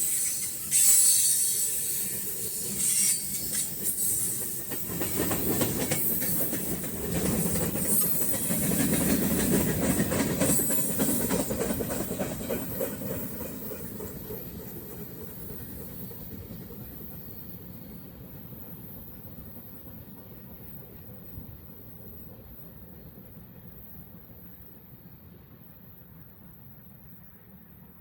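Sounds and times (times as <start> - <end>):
high hiss: 0.0 - 5.2
wheels clacking over rail joints: 0.0 - 17.1
freight train rolling past: 0.0 - 28.0.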